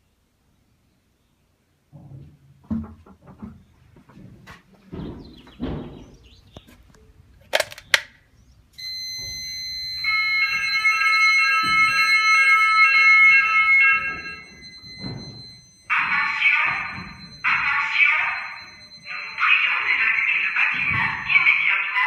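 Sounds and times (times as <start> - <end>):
sharp clicks: 7.5 - 8.2
pulsing multi-tone fire alarm: 8.8 - 22.0
steady high alarm tone: 8.8 - 22.0.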